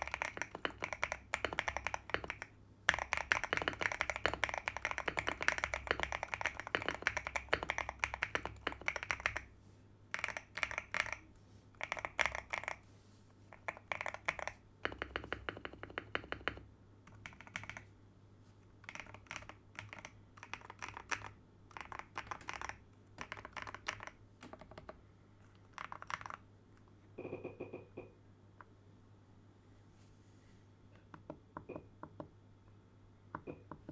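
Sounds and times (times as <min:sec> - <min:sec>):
mechanical keyboard typing: 0:00.0 - 0:09.5, 0:10.1 - 0:12.8, 0:13.5 - 0:17.9, 0:18.8 - 0:26.9.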